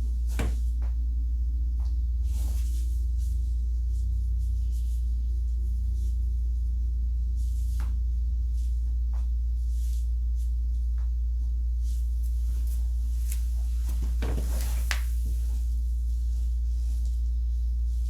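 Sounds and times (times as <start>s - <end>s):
low electrical hum: 0.0s - 18.0s
handling rustling: 12.2s - 15.8s.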